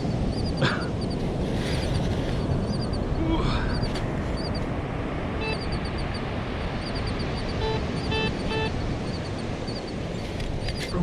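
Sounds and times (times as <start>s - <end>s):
wind noise: 0.0s - 11.0s
metal detector beeps: 0.3s - 1.2s, 3.7s - 4.7s, 5.4s - 10.0s.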